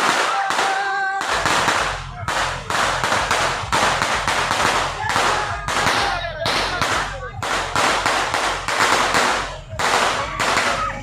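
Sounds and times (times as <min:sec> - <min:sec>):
firecrackers cracking: 0:00.0 - 0:11.0.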